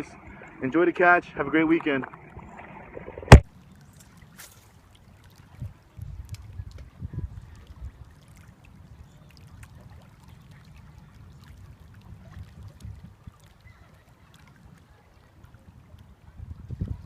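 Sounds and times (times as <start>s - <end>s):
water lapping: 0.0s - 17.0s
wind rumbling on microphone: 5.5s - 13.9s, 14.5s - 17.0s.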